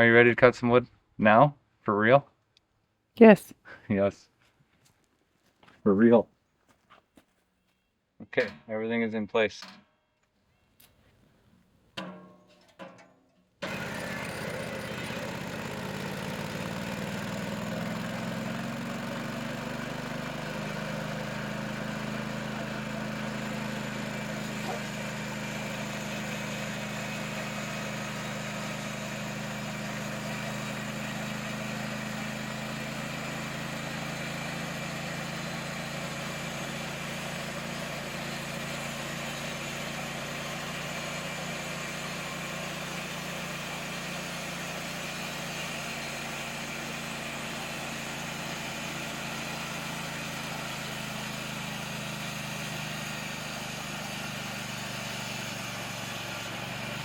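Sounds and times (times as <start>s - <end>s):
sawmill engine running: 13.6s - 57.0s.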